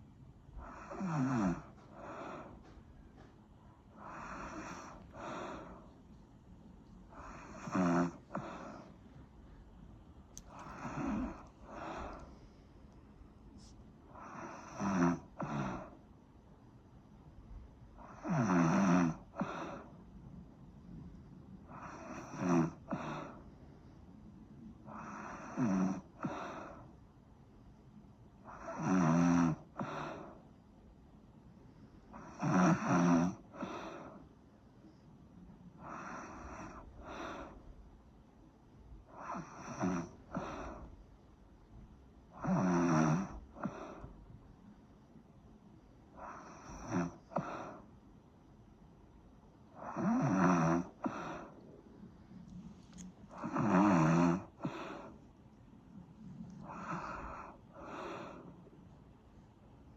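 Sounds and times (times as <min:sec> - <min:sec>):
person snoring: 0:00.6 - 0:02.6, 0:04.0 - 0:05.8, 0:07.1 - 0:08.9, 0:10.5 - 0:12.3, 0:14.2 - 0:16.0, 0:18.0 - 0:19.9, 0:21.7 - 0:23.4, 0:24.9 - 0:26.8, 0:28.5 - 0:30.3, 0:32.2 - 0:34.1, 0:39.2 - 0:40.9, 0:42.4 - 0:44.1, 0:46.2 - 0:47.8, 0:49.8 - 0:51.6, 0:53.3 - 0:55.2, 0:56.6 - 0:58.6.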